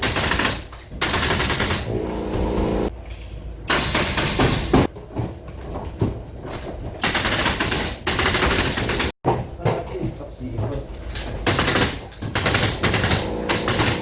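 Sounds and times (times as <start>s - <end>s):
pneumatic nail gun firing: 0.0s - 2.9s, 3.7s - 4.9s, 7.0s - 9.1s, 11.4s - 14.0s.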